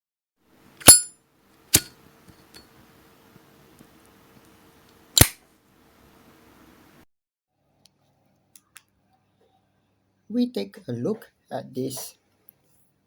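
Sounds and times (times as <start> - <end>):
lighter lid metallic clink: 0.8 - 1.1, 1.7 - 2.6
lighter lid snapping shut: 5.2 - 5.4.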